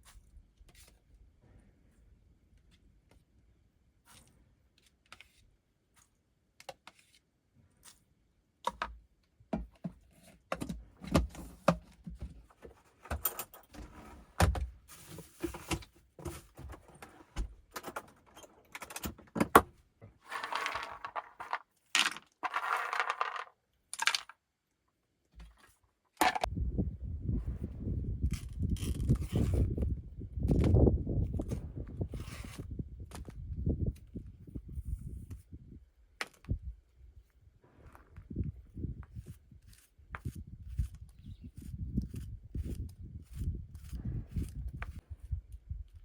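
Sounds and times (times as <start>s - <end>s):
clicks and clinks of small objects: 20.3s - 24.4s.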